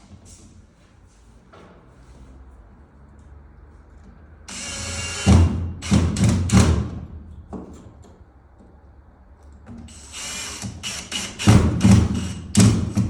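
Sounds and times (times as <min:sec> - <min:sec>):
power drill driving screw: 0:04.5 - 0:06.6, 0:09.9 - 0:12.8.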